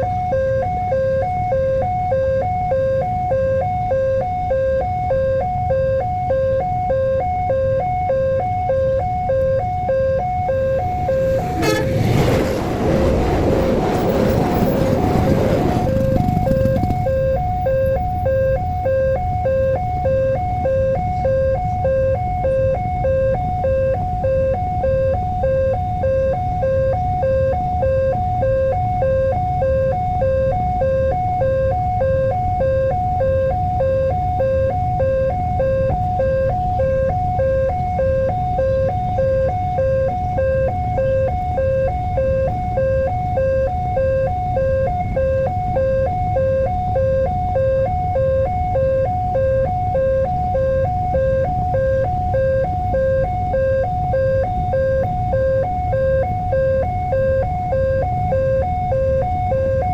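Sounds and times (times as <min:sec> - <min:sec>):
two-tone level crossing alarm: 0:00.0 - 0:59.9
low rumble: 0:10.4 - 0:18.1.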